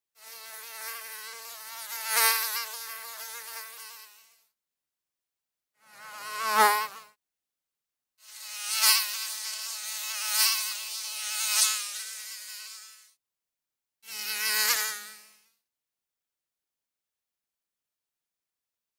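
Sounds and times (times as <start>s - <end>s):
mosquito buzzing in flight: 0.2s - 4.6s, 5.8s - 7.2s, 8.2s - 13.2s, 14.0s - 15.7s.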